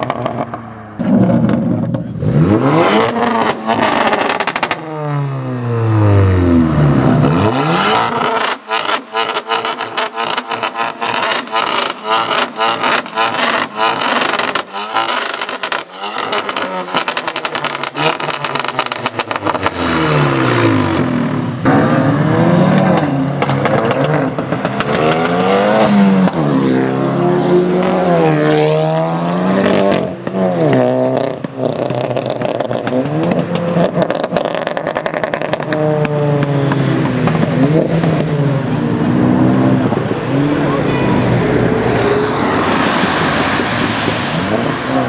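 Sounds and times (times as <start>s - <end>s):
exhaust crackles and pops: 0.0s - 2.1s, 8.0s - 20.0s, 31.2s - 38.4s
car engine revving: 0.0s - 45.0s.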